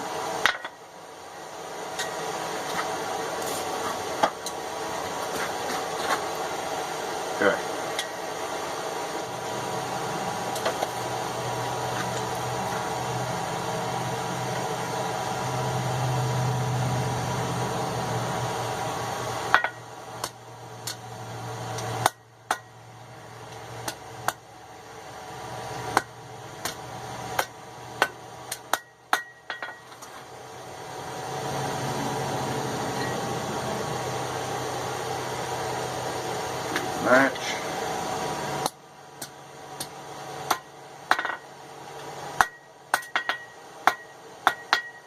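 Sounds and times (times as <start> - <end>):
steady hum: 0.0 - 45.0
hammer striking steel on anvil: 0.4 - 0.8, 19.5 - 21.0, 22.0 - 22.8, 25.9 - 30.1, 38.6 - 41.5, 42.4 - 45.0.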